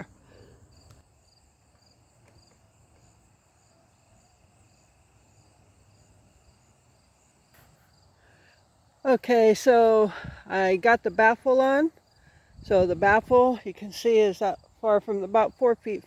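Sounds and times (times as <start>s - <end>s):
faint crickets chirping: 0.0s - 16.0s.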